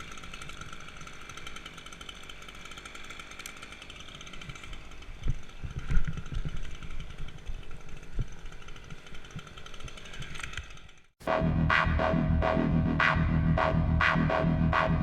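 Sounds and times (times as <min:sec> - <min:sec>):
low thumps: 0:11.2 - 0:15.0.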